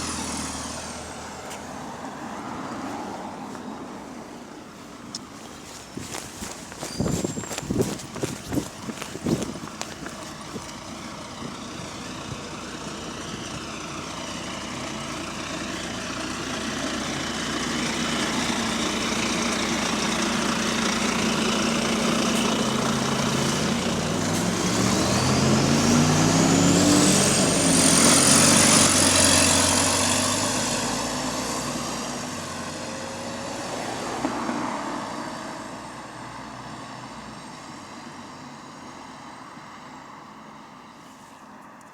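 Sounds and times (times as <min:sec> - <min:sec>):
bus engine accelerating: 0:00.0 - 0:40.8
high engine whine: 0:03.1 - 0:29.3.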